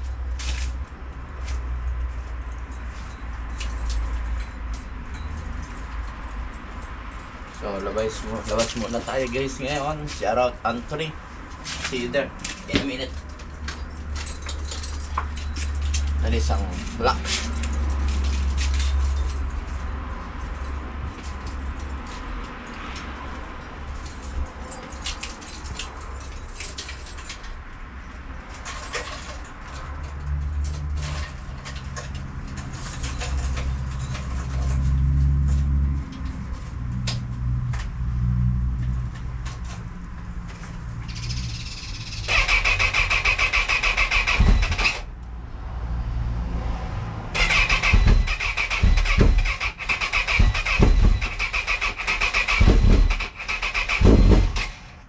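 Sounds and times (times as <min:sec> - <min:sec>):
motorcycle starter cranking: 0:41.9 - 0:45.1, 0:47.4 - 0:54.8.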